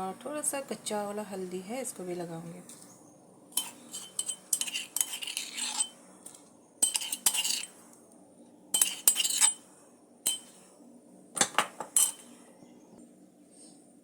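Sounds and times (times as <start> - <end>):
metal utensils clinking on pot: 3.6 - 6.0, 6.8 - 7.7, 8.8 - 9.6, 10.3 - 10.6, 11.4 - 12.3.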